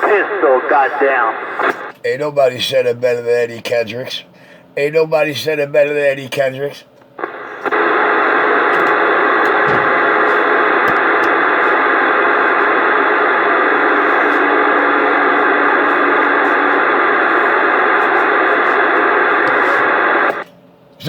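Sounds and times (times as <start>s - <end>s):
radio static rush: 0.0s - 1.9s, 7.2s - 20.5s.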